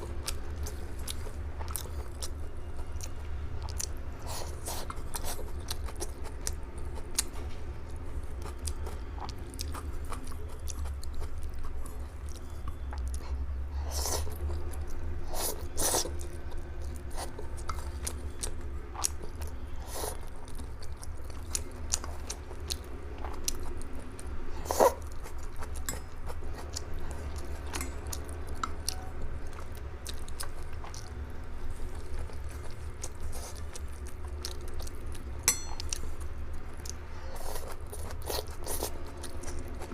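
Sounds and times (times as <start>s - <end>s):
chewing and biting noodles: 0.0s - 39.9s
steady low hum: 0.0s - 39.9s.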